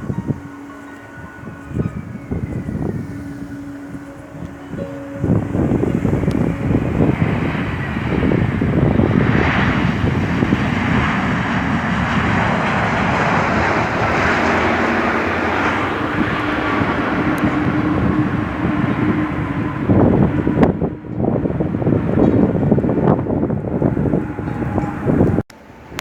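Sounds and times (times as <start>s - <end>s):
jet engines: 0.0s - 26.0s
low hum: 0.0s - 26.0s
wind buffeting microphone: 0.0s - 26.0s.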